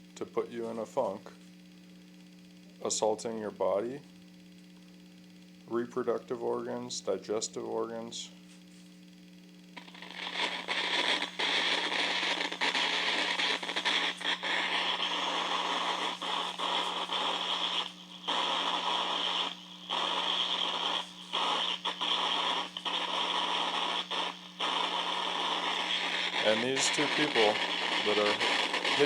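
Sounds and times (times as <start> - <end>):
steady low hum: 0.0 - 29.0
electronic static crackle: 9.7 - 29.0.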